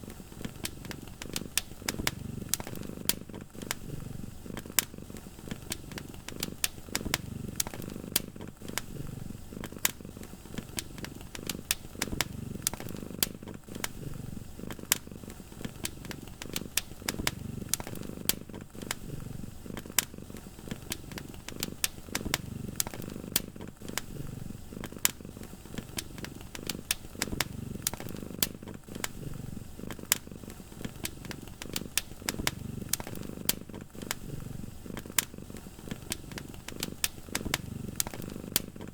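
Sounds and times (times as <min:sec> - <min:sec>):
cat purring: 0:00.0 - 0:38.9
wood fire crackling and popping: 0:00.0 - 0:38.9.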